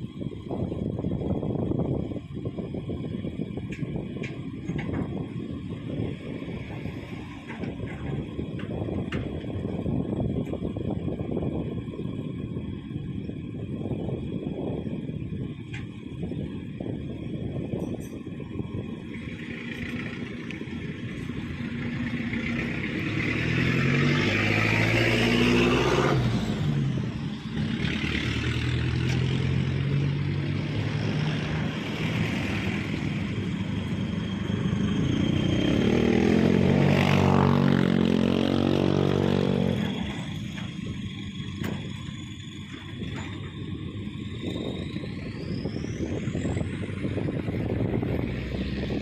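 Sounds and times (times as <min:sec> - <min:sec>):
excavator diesel engine under load: 0:00.0 - 0:49.0.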